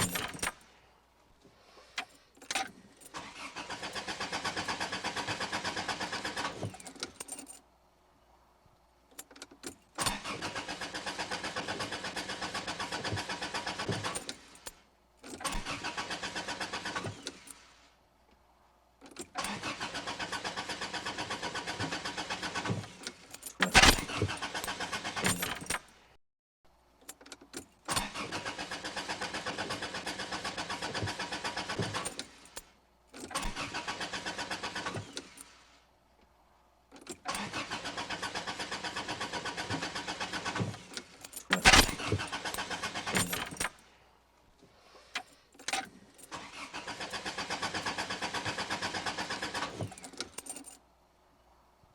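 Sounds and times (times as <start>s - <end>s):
car engine cranking: 0.0s - 0.6s, 2.4s - 7.4s, 9.2s - 14.6s, 15.2s - 17.5s, 19.2s - 25.8s, 27.1s - 32.6s, 33.2s - 35.5s, 37.0s - 43.8s, 45.0s - 50.7s.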